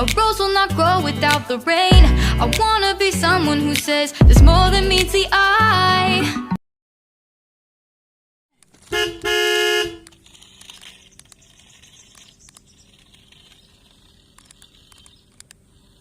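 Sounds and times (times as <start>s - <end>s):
horn tooting: 8.8s - 10.2s
small clicks: 10.0s - 16.0s.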